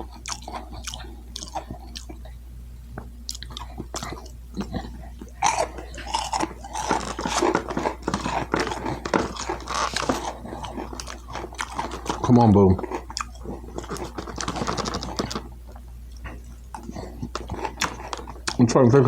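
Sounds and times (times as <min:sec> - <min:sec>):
person chewing food: 0:00.0 - 0:18.7.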